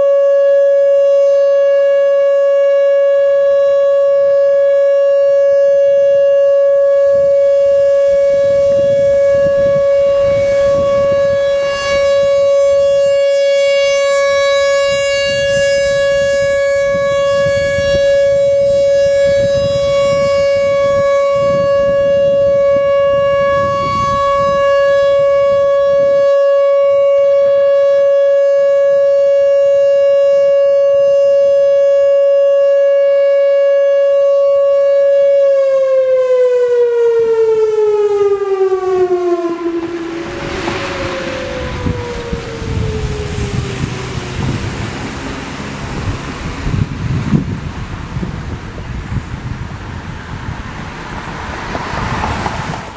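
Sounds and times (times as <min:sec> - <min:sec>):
outdoor warning siren steady tone: 0:00.0 - 0:52.9
low rumble: 0:39.0 - 0:46.3.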